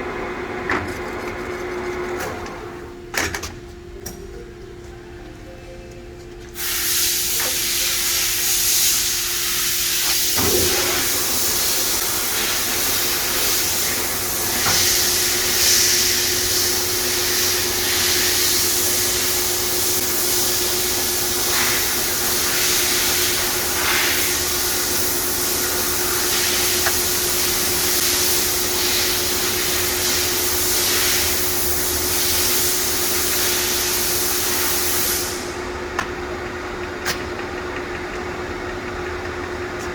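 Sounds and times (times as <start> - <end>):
lathe hissing: 6.6 - 35.7.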